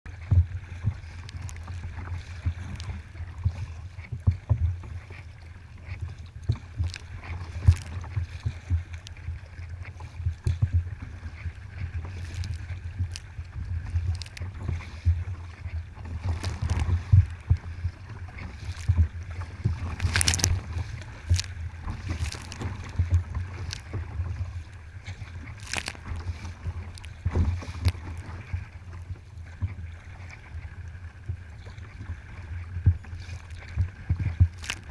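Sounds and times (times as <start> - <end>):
paddle strokes in water: 0.1 - 34.9
water slapping against hull: 0.1 - 34.9.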